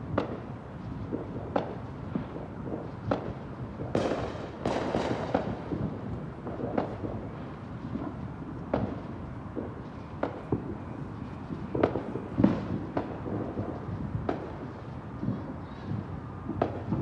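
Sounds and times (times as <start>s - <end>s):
low fireworks rumble: 0.0s - 17.0s
fireworks crackling: 0.3s - 17.0s
fireworks bangs: 1.1s - 10.8s.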